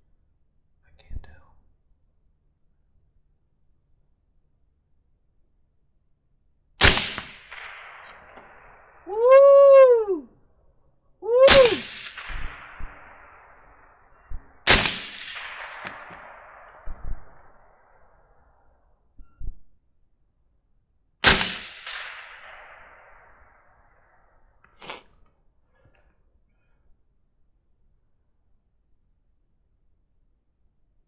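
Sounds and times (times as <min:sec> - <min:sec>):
gunshots with rolling echo: 0:06.8 - 0:10.2, 0:11.3 - 0:18.5, 0:21.2 - 0:24.2
rising and falling call: 0:09.0 - 0:10.3, 0:11.2 - 0:11.9.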